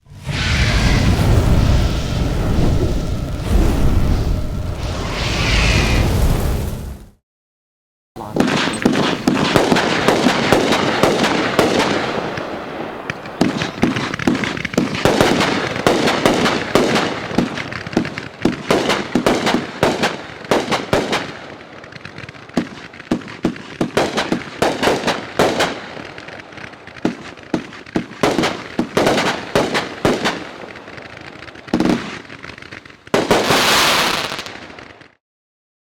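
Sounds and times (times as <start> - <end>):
strobe crackling: 0.0 - 7.1
firework bangs: 0.0 - 7.2, 8.4 - 35.2.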